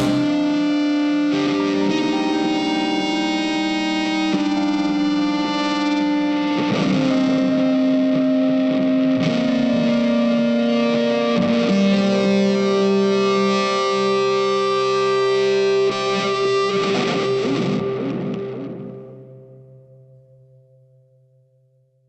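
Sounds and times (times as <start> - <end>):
distorted guitar chords: 0.0 - 1.8.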